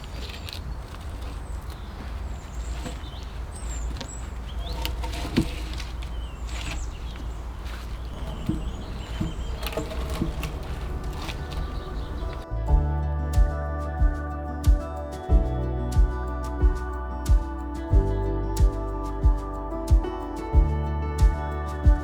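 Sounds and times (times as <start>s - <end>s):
small birds chirping: 0.0s - 12.6s
steady low rumble: 6.4s - 22.0s.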